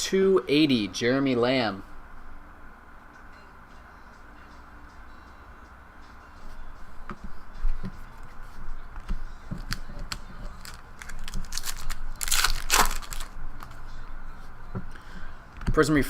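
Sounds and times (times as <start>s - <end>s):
cards clicking and rustling: 9.6s - 13.8s
wrapper crinkling and tearing: 10.5s - 13.8s.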